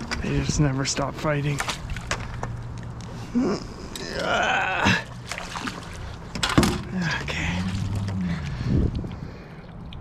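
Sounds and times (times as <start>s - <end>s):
man grunting and groaning: 3.3s - 5.2s.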